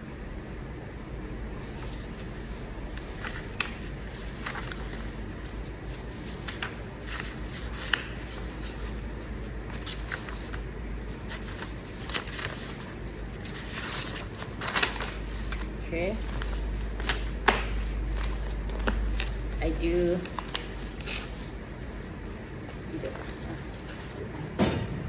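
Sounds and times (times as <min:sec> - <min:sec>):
steady low hum: 0:00.0 - 0:25.0
pen and paper taps and rustles: 0:02.2 - 0:09.0, 0:11.3 - 0:21.4.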